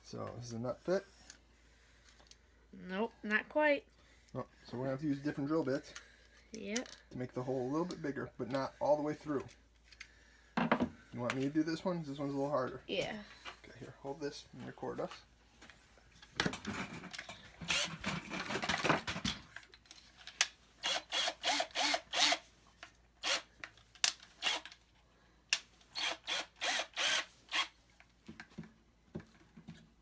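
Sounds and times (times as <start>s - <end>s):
power drill boring into wood: 17.6s - 18.2s, 20.8s - 22.4s, 23.2s - 23.5s, 24.4s - 24.7s, 25.9s - 27.8s.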